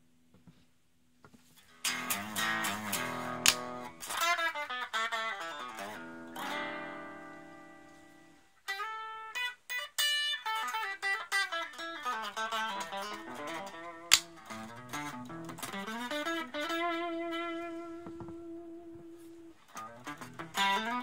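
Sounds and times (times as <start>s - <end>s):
electric guitar playing: 1.8s - 21.0s
sharp click: 2.8s - 3.7s.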